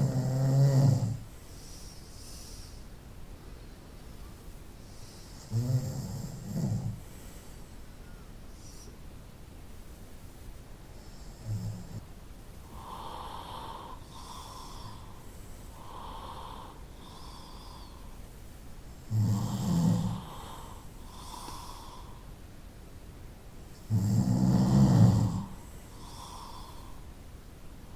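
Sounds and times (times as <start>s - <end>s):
person snoring: 0.0s - 1.2s, 5.4s - 7.0s, 19.0s - 22.2s, 23.9s - 27.0s
soft breaths: 0.0s - 27.9s.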